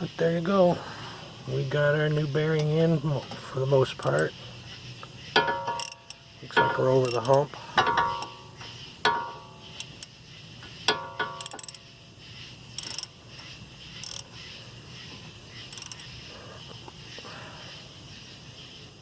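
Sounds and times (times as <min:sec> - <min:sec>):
sharp metallic clinks: 0:02.4 - 0:17.1
small metal rattles: 0:02.4 - 0:17.1
ratchet clicks: 0:02.5 - 0:17.1.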